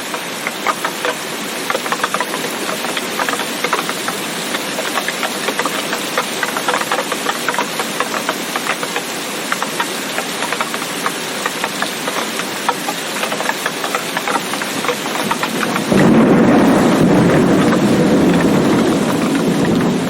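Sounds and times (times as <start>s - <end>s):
heavy rain pattering: 0.0s - 20.0s
thunder rumbling: 14.0s - 20.0s.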